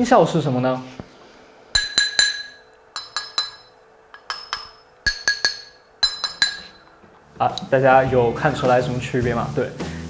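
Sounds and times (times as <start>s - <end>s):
glass clinking: 1.7s - 7.7s.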